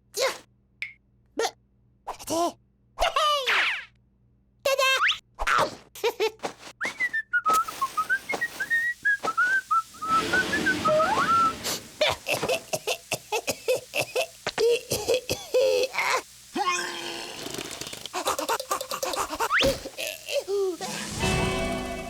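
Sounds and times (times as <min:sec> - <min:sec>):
squeaky vocal noises: 0:16.6 - 0:21.1.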